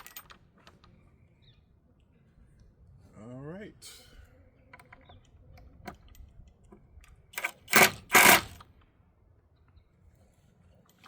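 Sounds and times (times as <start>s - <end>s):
loud rattling bursts: 7.4s - 8.6s
metal door hardware clicking: 7.4s - 8.6s.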